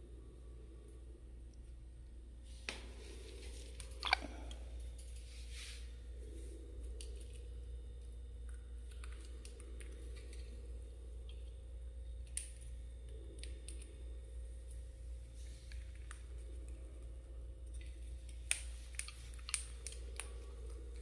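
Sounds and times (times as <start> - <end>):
steady low hum: 0.0 - 21.0
small clicks and ticks: 6.8 - 14.9, 15.6 - 21.0.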